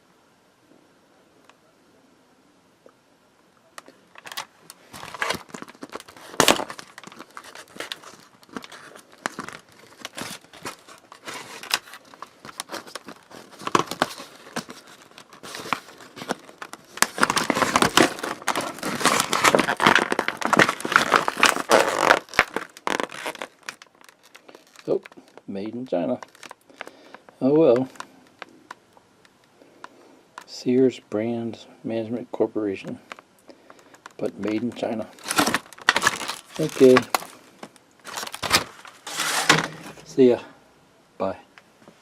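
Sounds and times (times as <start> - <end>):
plastic packaging crinkling: 3.8 - 28.8, 32.8 - 40.4.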